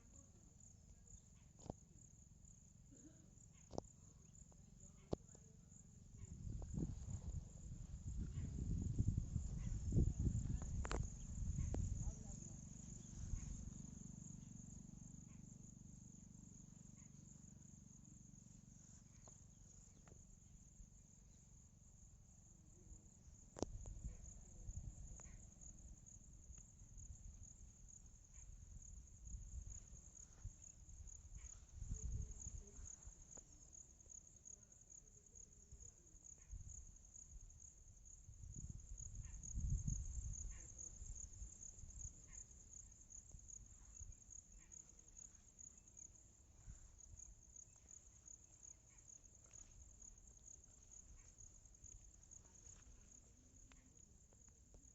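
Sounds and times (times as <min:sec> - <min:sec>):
crickets trilling: 0:00.0 - 0:54.9.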